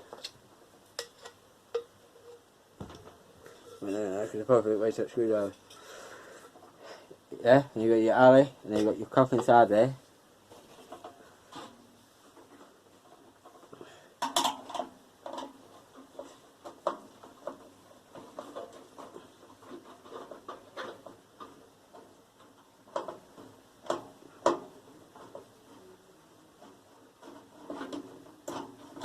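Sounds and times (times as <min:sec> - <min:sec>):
screwdriver and parts clattering: 0:14.2 - 0:15.6.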